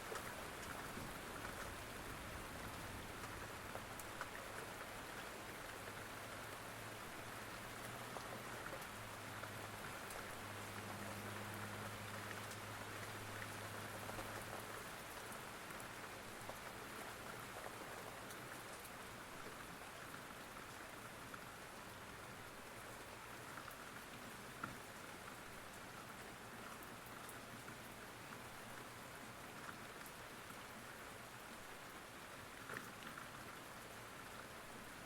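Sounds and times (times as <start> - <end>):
rain pattering: 0.0 - 35.0.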